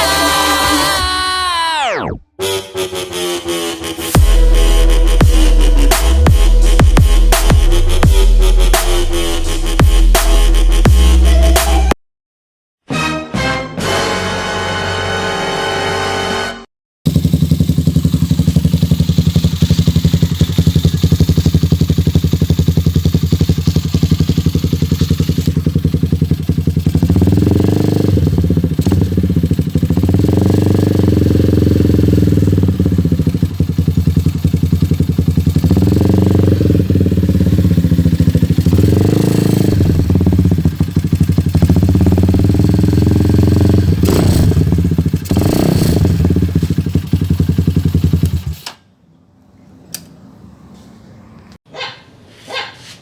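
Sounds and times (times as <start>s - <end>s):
motorcycle idling and revving: 17.1s - 48.8s.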